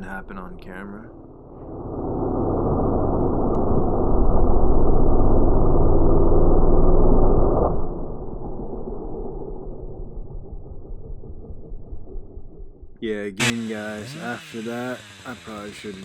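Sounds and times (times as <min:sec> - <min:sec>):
chainsaw engine revving: 0:13.4 - 0:16.0.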